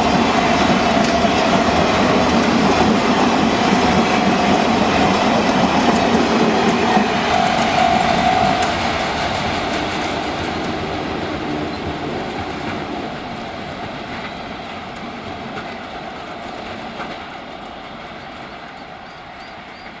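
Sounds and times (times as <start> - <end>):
train wheels clacking on rails: 0.0 - 20.0
steady high tone: 1.2 - 13.1.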